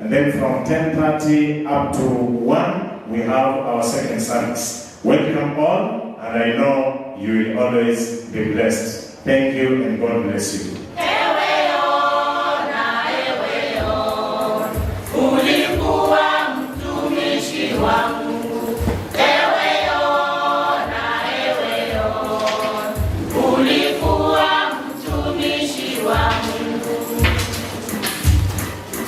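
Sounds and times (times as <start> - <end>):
choir singing gospel: 10.9 - 29.0.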